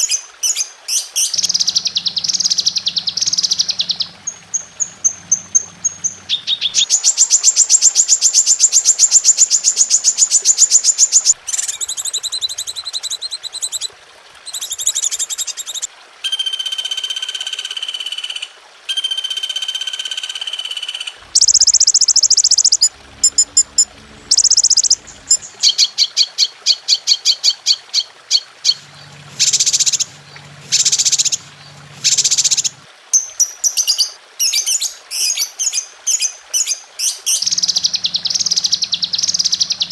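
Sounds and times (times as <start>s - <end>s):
songbird trills: 0.0s - 12.6s, 18.9s - 27.3s, 28.0s - 39.9s
whistled bird notes: 18.9s - 26.0s.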